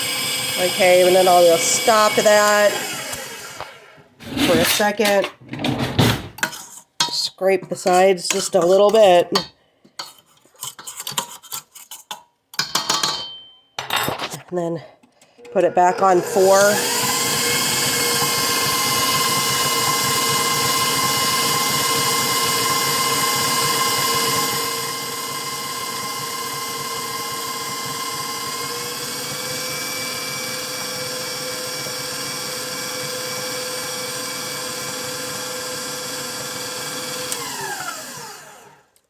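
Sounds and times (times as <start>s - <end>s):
stand mixer motor whining: 0.0s - 4.4s, 15.5s - 38.9s
whisk beating batter: 6.4s - 12.2s, 16.7s - 29.4s.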